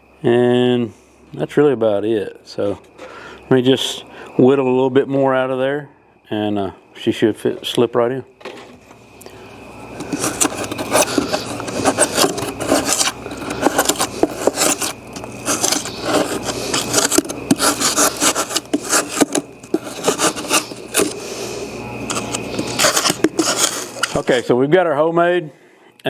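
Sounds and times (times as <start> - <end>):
knife rasping foam: 10.0 - 24.3.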